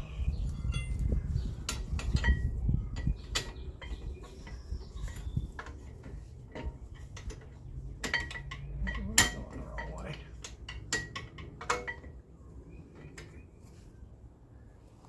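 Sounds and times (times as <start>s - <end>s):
hand tools clinking on metal: 3.4s - 12.2s.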